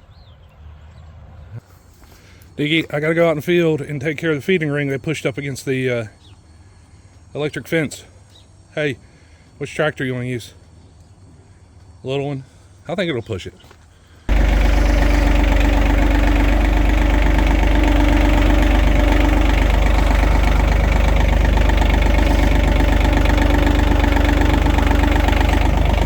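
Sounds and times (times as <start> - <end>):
tractor engine running: 14.3 - 26.0.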